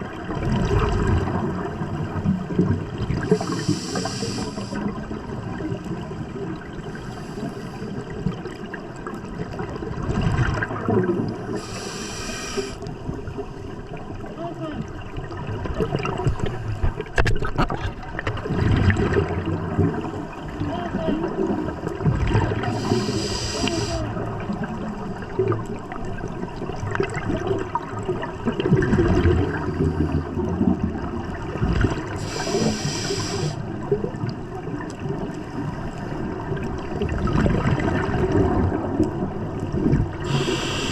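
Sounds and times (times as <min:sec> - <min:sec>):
water sloshing and bubbling: 0:00.0 - 0:40.9
short bursts of hiss: 0:03.3 - 0:04.8, 0:11.6 - 0:12.8, 0:22.7 - 0:24.0, 0:32.2 - 0:33.6, 0:40.3 - 0:40.9.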